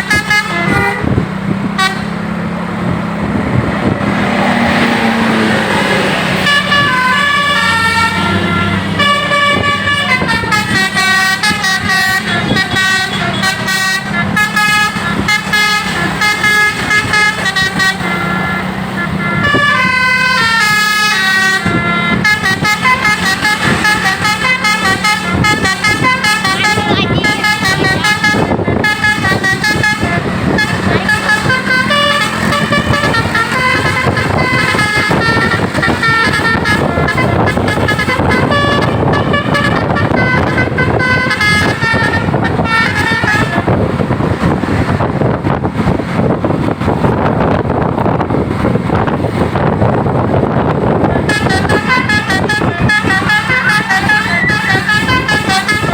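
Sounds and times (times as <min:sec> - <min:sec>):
bus horn playing a fast tune: 0:00.0 - 0:02.5, 0:03.3 - 0:55.9
loud steady noise: 0:00.0 - 0:55.9.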